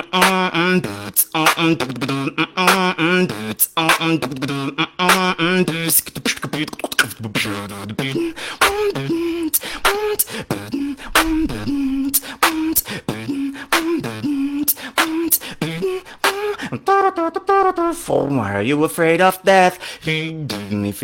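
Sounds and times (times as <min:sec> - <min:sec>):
beatbox percussion: 0:00.0 - 0:18.1, 0:19.8 - 0:21.0
hummed bass line: 0:08.1 - 0:16.0.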